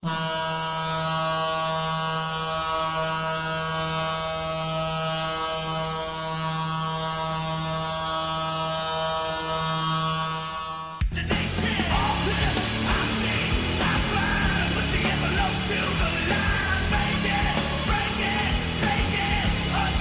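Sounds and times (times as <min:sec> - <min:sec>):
goal horn long blast: 0:00.0 - 0:11.0.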